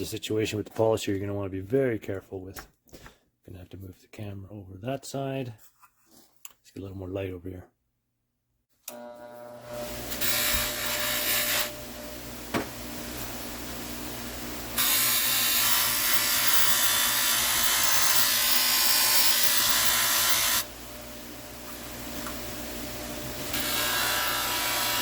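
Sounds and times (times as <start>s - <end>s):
electric polisher humming: 8.9s - 13.8s, 14.7s - 25.0s.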